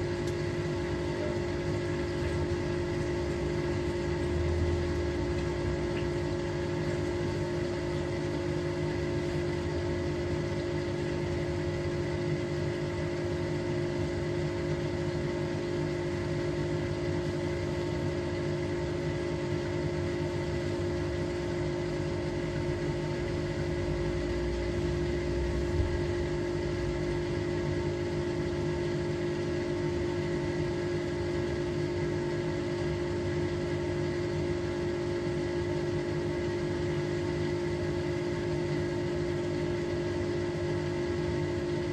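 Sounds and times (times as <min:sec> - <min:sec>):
washing machine motor hum: 0:00.0 - 0:41.9.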